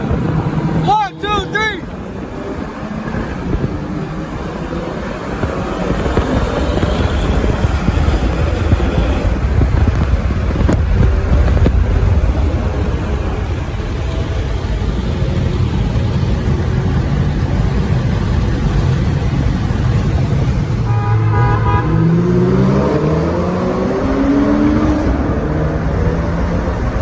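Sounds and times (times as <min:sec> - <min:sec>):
car engine and road rumble: 0:00.0 - 0:27.0
car engine revving up: 0:00.0 - 0:27.0
short horn toot: 0:20.8 - 0:22.1.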